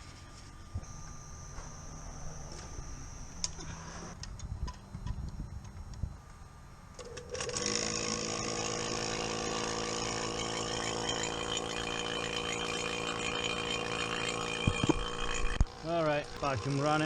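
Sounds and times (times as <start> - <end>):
vacuum pump motor running: 7.0 - 17.0.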